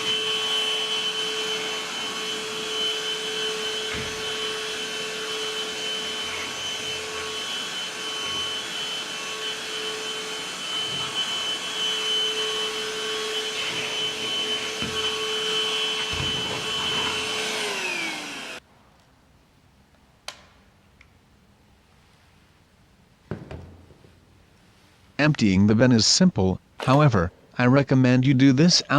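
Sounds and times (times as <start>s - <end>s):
handheld vacuum cleaner whine: 0.0s - 18.6s.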